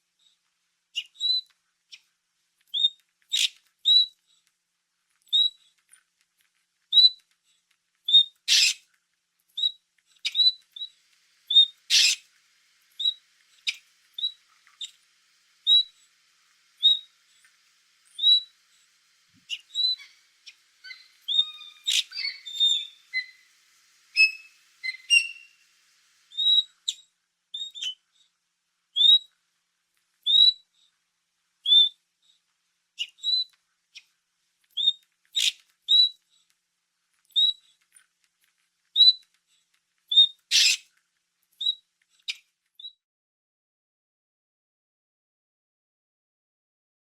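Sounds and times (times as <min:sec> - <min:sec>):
otter chirping squeaks: 0:01.0 - 0:01.5, 0:02.7 - 0:04.2, 0:05.3 - 0:05.8, 0:06.9 - 0:07.3, 0:08.1 - 0:08.9, 0:09.6 - 0:12.3, 0:12.9 - 0:15.0, 0:15.6 - 0:16.1, 0:16.8 - 0:17.4, 0:18.0 - 0:25.7, 0:26.3 - 0:28.0, 0:29.0 - 0:29.3, 0:30.2 - 0:30.6, 0:31.6 - 0:32.0, 0:33.0 - 0:34.1, 0:34.7 - 0:36.2, 0:37.3 - 0:37.8, 0:39.0 - 0:39.3, 0:40.1 - 0:40.9, 0:41.6 - 0:43.0.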